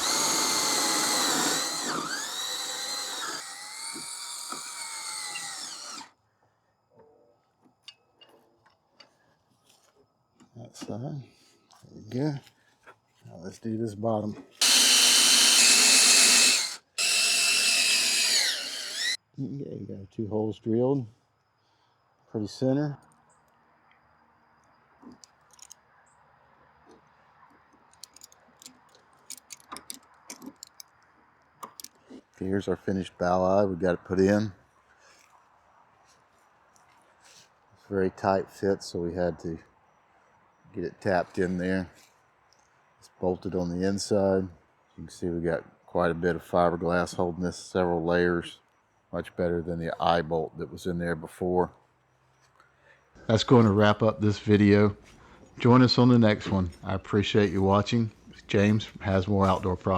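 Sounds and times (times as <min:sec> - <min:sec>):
power drill whining: 0:00.0 - 0:06.1, 0:14.6 - 0:19.2.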